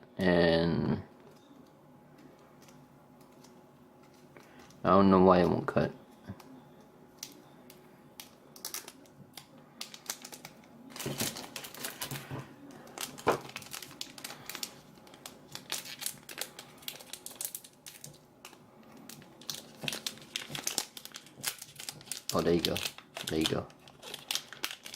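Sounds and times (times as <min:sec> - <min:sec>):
foil wrapper crinkling: 0:08.2 - 0:24.9
scissors cutting foil: 0:19.4 - 0:24.9.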